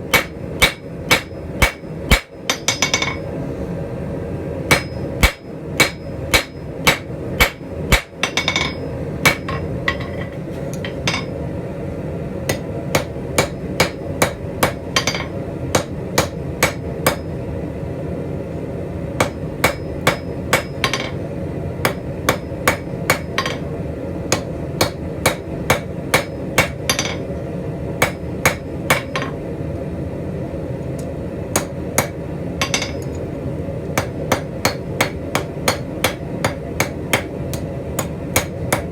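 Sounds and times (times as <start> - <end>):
steady background noise: 0.0 - 38.9
hammer striking steel on anvil: 0.1 - 3.3, 4.7 - 11.4, 12.5 - 17.4, 19.2 - 21.2, 21.8 - 23.7, 24.3 - 27.3, 28.0 - 29.4, 31.5 - 33.2, 34.0 - 38.9.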